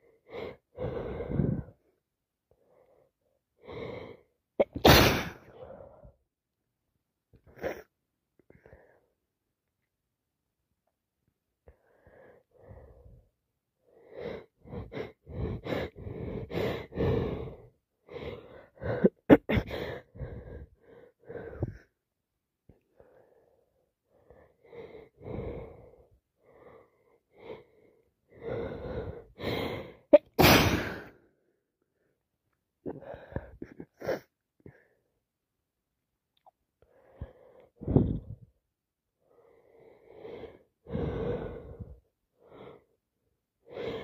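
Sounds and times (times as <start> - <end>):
wheezy gasping breaths: 0.0 - 2.0, 11.7 - 22.0, 22.8 - 31.3, 36.8 - 38.5, 39.2 - 43.0, 43.6 - 44.0
woman sneezing: 4.6 - 5.4, 30.2 - 31.1
woman sniffing: 30.2 - 31.1.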